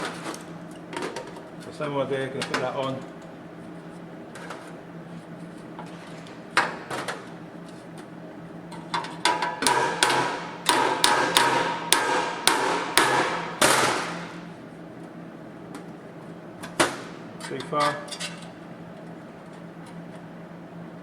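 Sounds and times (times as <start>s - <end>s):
steady low hum: 0.0s - 21.0s
hammer tapping sheet metal: 9.3s - 14.4s.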